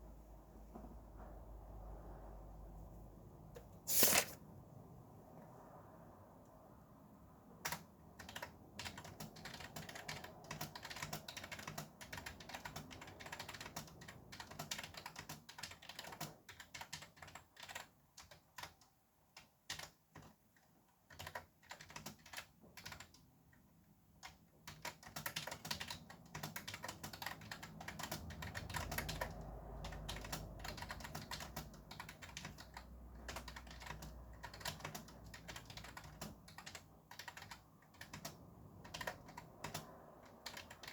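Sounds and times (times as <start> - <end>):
fast typing on keyboard: 7.6 - 23.3, 24.1 - 40.9.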